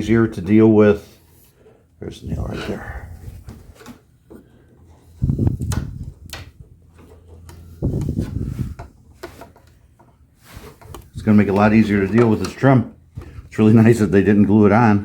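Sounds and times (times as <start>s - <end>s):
wood scraping and knocking: 3.2s - 14.2s.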